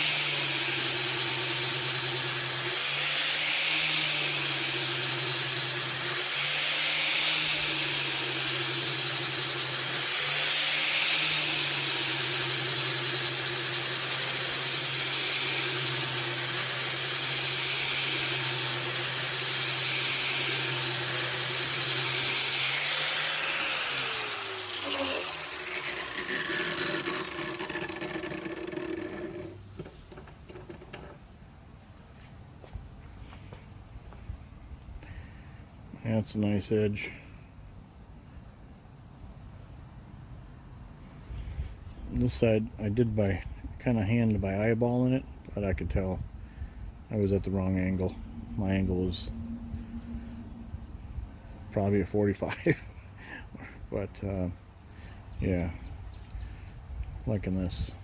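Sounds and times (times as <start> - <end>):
angle grinder grinding steel: 0.0 - 29.9
grinder winding down whine: 15.4 - 29.6.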